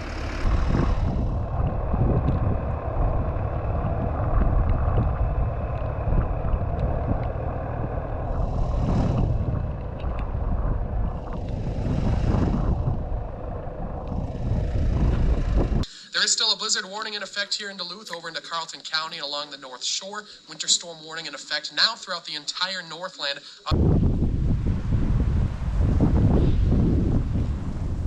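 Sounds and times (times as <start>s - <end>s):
vehicle engine rumbling: 0.0s - 16.6s, 23.7s - 28.0s
rushes of hiss: 8.3s - 9.7s.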